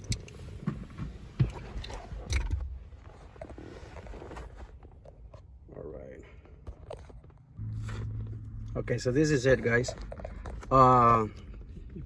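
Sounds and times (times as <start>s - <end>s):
low rumbling handling noise: 7.0s - 12.0s.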